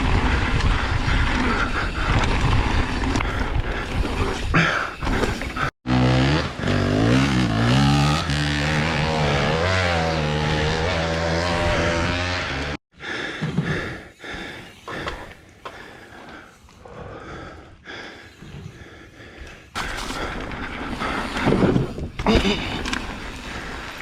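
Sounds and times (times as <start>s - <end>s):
dirt bike engine revving: 5.8s - 12.8s.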